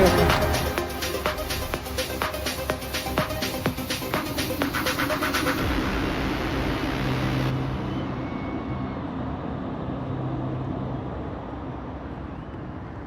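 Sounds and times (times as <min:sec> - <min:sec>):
passing motor vehicles rumble: 0:05.6 - 0:13.0.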